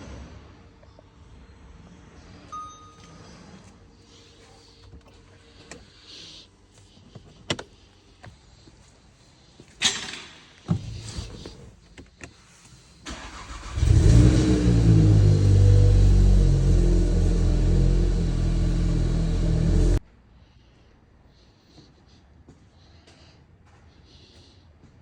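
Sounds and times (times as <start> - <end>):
car engine starting and running: 13.1 - 20.0.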